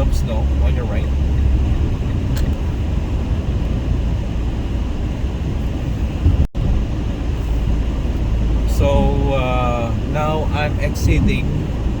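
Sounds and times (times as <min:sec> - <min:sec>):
car road noise: 0:00.0 - 0:12.0.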